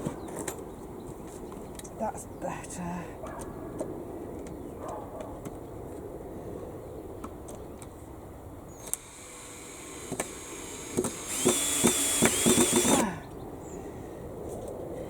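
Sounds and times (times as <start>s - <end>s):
cordless drill driving a screw: 8.8s - 13.2s.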